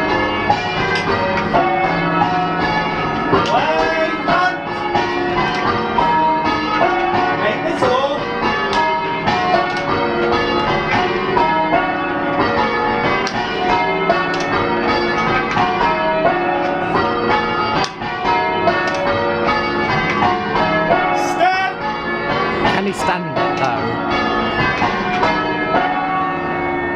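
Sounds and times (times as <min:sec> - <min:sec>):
church bells change ringing: 0:00.0 - 0:26.9.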